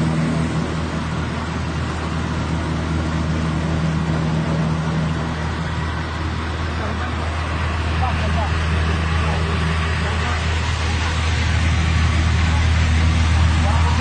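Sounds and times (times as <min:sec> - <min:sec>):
rice milling machine humming: 0:00.0 - 0:14.0.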